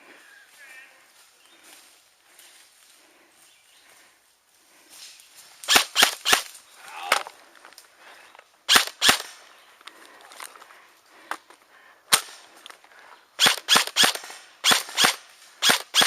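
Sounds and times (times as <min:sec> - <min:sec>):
airsoft gunshots: 0:05.7 - 0:06.5, 0:08.7 - 0:09.4, 0:13.4 - 0:16.0.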